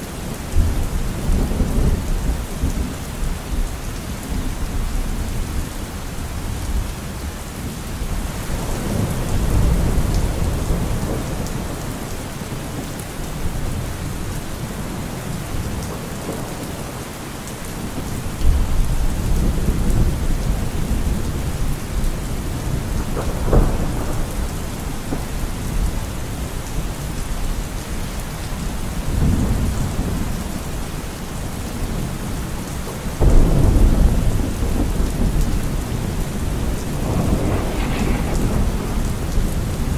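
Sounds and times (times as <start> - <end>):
steady rain: 0.0 - 39.9
thunder rolling: 33.2 - 39.9.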